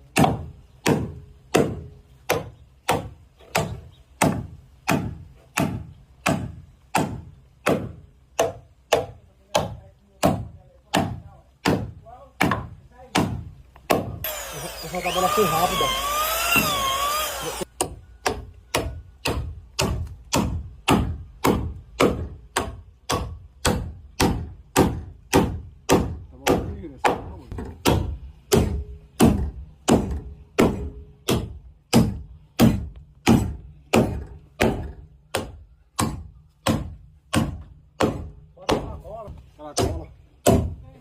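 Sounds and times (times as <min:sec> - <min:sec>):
power tool whine: 0:14.2 - 0:17.7
hammer driving nails into wood: 0:16.0 - 0:38.9.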